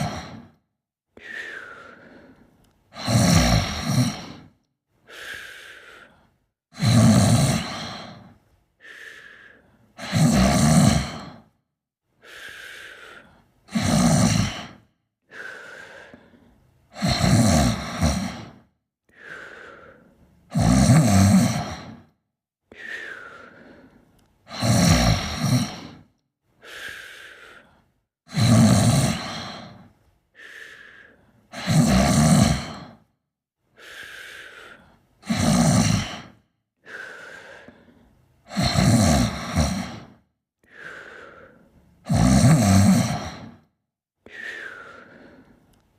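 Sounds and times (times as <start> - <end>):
person snoring loudly: 0.0 - 0.6, 2.9 - 4.6, 6.7 - 8.4, 10.0 - 11.6, 13.7 - 15.5, 16.9 - 18.7, 20.5 - 22.1, 24.5 - 26.1, 28.3 - 29.9, 31.5 - 33.1, 35.2 - 36.4, 38.5 - 40.2, 42.0 - 43.7.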